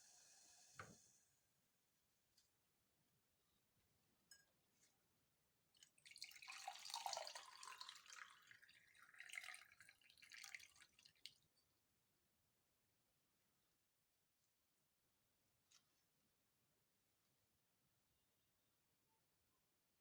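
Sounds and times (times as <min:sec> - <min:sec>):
liquid pouring and splashing: 0:05.8 - 0:11.4.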